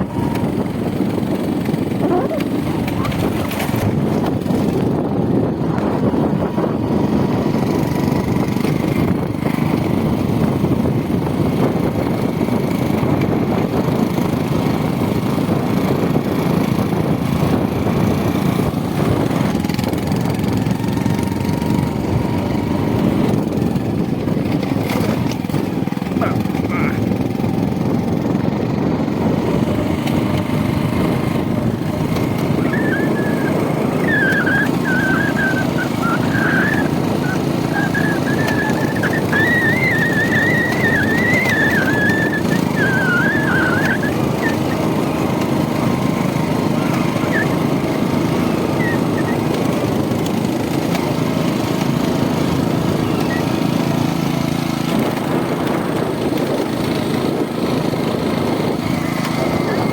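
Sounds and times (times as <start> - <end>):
vehicle engine and road rumble: 0.0 - 59.9
wavering high whistle: 32.6 - 44.8, 46.8 - 47.6, 48.6 - 49.5.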